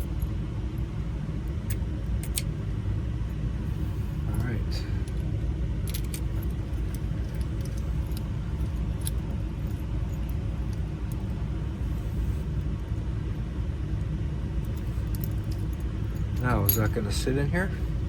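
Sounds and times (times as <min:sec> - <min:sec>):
steady low rumble: 0:00.0 - 0:18.0
metal parts and keys clicking: 0:01.7 - 0:02.5, 0:05.8 - 0:12.4, 0:14.6 - 0:17.2.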